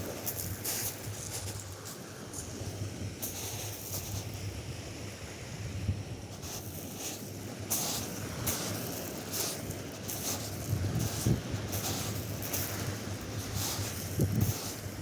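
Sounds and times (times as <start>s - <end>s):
surf washing on sand: 0.0s - 15.0s
wind rumbling on microphone: 10.0s - 15.0s.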